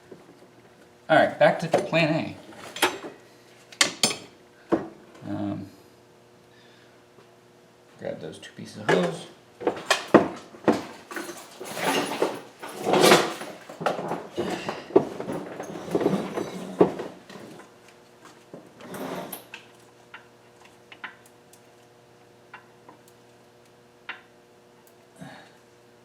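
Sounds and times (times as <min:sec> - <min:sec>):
faint steady hum: 0:00.0 - 0:26.0
tools and parts rustling and clattering: 0:01.6 - 0:05.0, 0:08.8 - 0:21.8.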